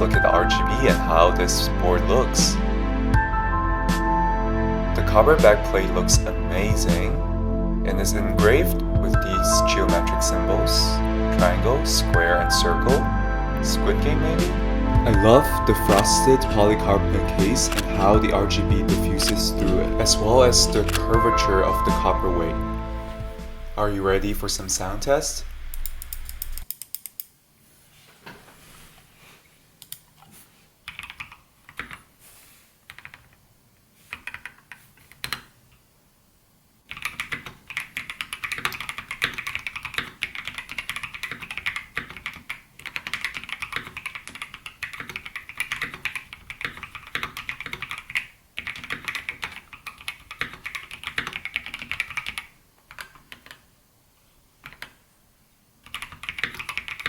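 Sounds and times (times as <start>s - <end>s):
typing on mechanical keyboard: 15.2s - 21.4s, 30.9s - 32.1s, 32.9s - 33.4s, 34.1s - 35.5s, 36.9s - 53.6s, 54.6s - 55.0s, 55.8s - 57.0s.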